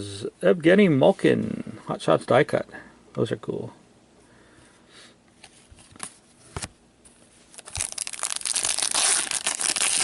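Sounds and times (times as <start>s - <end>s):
wrapper tearing and crinkling: 7.5s - 10.0s.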